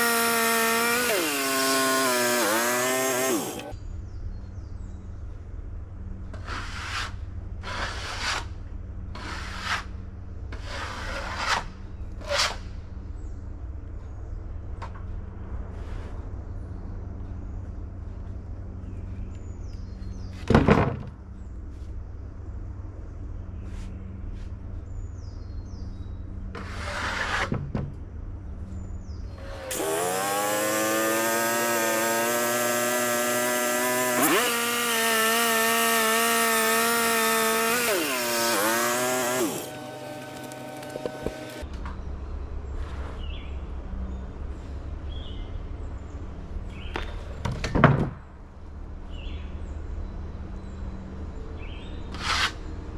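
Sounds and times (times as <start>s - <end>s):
band saw blade cutting log: 0.0s - 3.7s, 29.4s - 41.6s, 52.1s - 52.6s
sawmill engine running: 0.0s - 3.7s, 29.4s - 41.6s.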